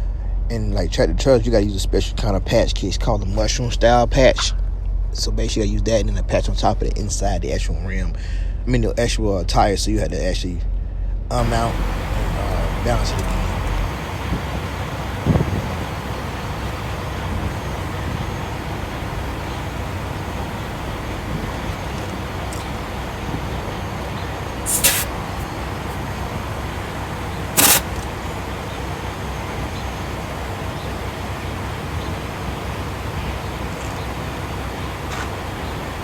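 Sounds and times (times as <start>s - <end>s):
heavy truck engines rumbling: 11.3s - 36.0s
compressed air hiss bursts: 11.4s - 26.1s, 27.4s - 28.3s.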